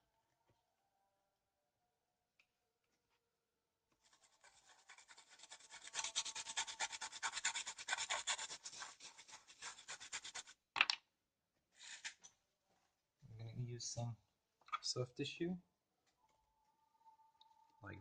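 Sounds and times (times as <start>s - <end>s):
toothbrush scrubbing circuit board: 4.0s - 10.6s.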